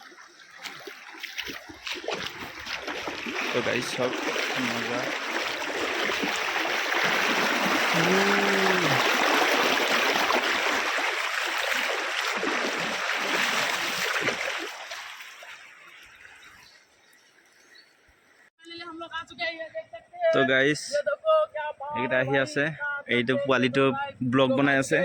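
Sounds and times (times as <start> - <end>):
stream water rushing: 0.0 - 16.4
voice-like tone: 7.9 - 9.1.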